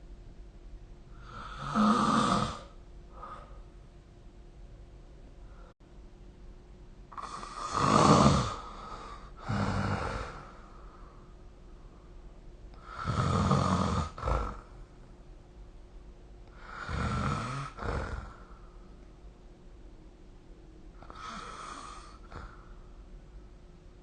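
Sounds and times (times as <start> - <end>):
person snoring: 1.1 - 3.6, 7.1 - 10.8, 12.8 - 14.7, 16.5 - 18.6, 21.0 - 22.7.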